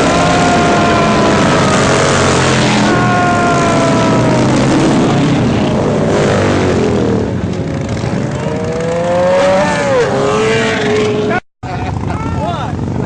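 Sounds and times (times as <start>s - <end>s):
motorcycle engines revving: 0.0s - 13.0s.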